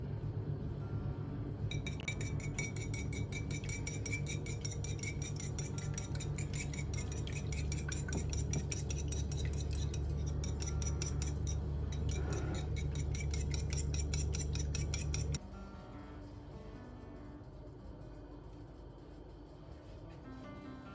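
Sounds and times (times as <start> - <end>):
metal utensil whisking in dish: 1.7 - 15.4.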